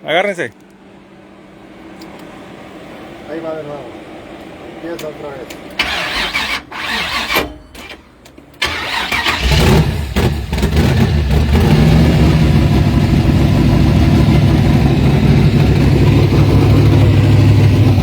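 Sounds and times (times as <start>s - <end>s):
engine starter cranking: 5.8s - 10.6s
engine idling with deep rumble: 9.4s - 18.0s.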